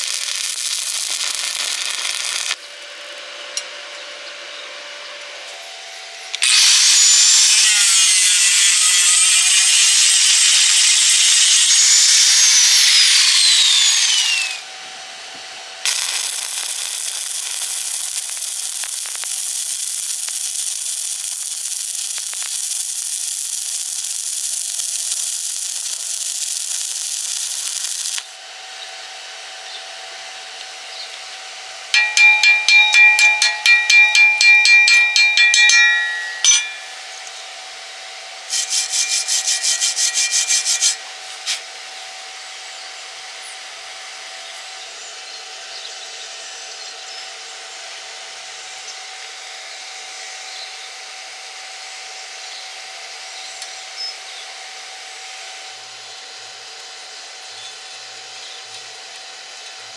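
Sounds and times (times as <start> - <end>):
hand tool rasping on steel: 32.0 - 36.8, 38.5 - 41.0.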